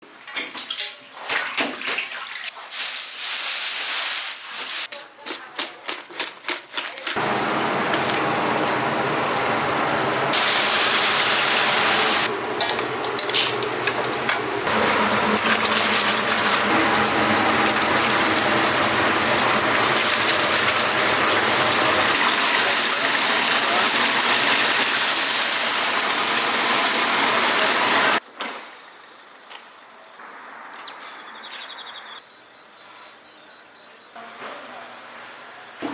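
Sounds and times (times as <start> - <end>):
chicken deep-frying in hot oil: 5.6 - 28.2.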